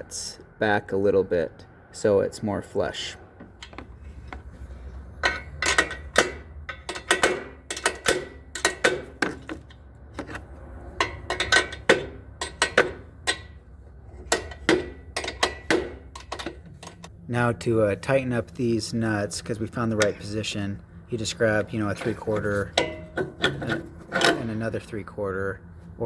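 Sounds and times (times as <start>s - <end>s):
low steady hum: 0.0s - 26.0s
metal clicks of nuts on bolt: 5.2s - 13.6s, 14.2s - 17.1s.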